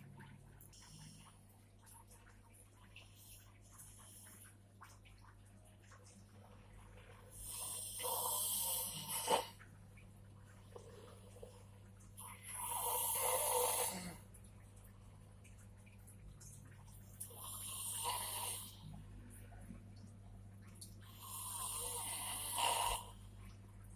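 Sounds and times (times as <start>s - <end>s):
person snoring with snort: 7.5s - 9.6s, 12.3s - 14.2s, 21.2s - 23.1s.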